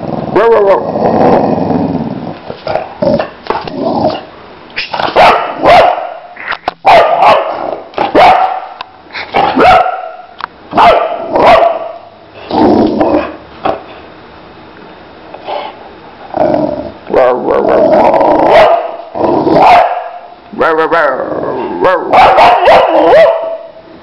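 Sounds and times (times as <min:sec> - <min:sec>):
dog barking: 0:05.1 - 0:08.8, 0:09.4 - 0:12.1, 0:18.5 - 0:19.0, 0:19.6 - 0:20.3, 0:21.8 - 0:23.7.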